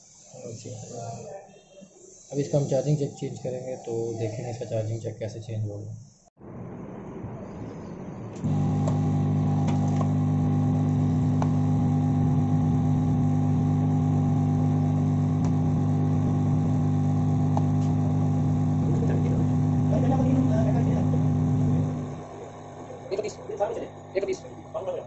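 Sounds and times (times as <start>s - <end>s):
electric machine humming: 8.4s - 25.0s.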